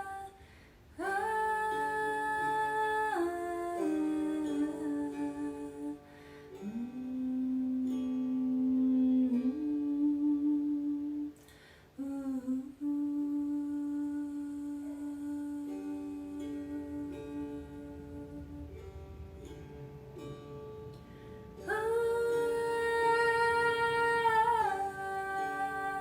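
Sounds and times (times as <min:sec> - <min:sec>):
person humming long notes: 0:01.0 - 0:11.4, 0:12.0 - 0:26.0.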